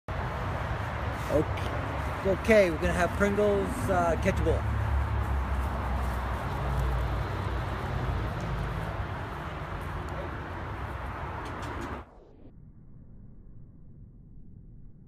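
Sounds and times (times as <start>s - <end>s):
low rumble: 12.0s - 15.0s.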